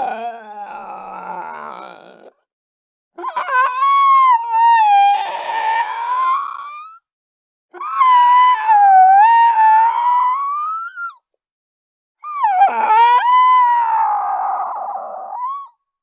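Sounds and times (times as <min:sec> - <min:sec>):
person wailing cry: 0:00.0 - 0:02.3.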